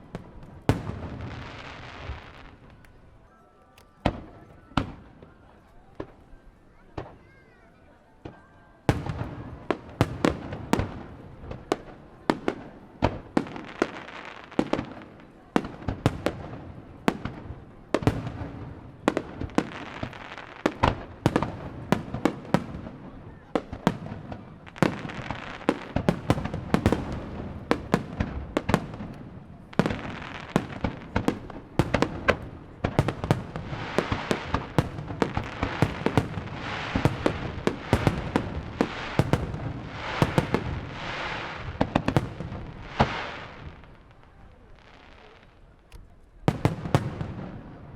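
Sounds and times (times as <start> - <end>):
fireworks booming: 0.0 - 2.8, 8.9 - 44.2, 46.5 - 47.9
fireworks crackle: 0.0 - 3.1, 8.3 - 47.9.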